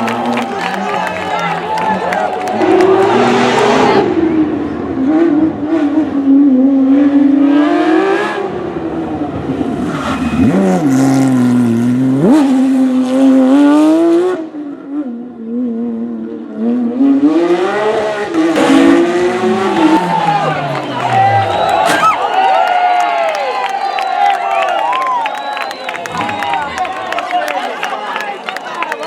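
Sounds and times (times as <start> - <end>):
rally car engine revving: 0.0 - 22.6.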